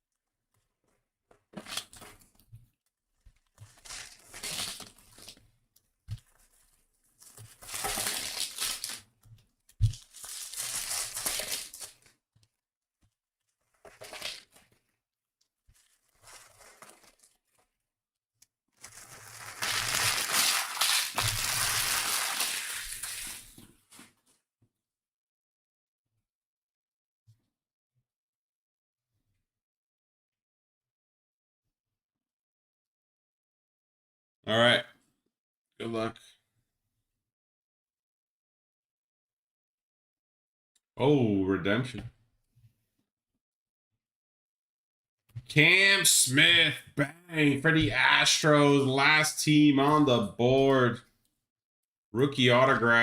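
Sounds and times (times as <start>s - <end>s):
foil wrappers tearing and crinkling: 3.7s - 5.4s, 7.2s - 9.1s, 9.8s - 12.1s, 13.8s - 14.7s, 15.8s - 17.6s, 18.8s - 23.7s.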